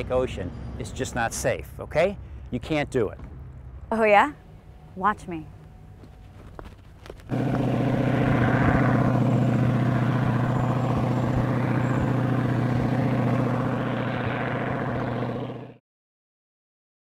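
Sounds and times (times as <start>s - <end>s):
piston aircraft engine running: 4.6s - 15.8s.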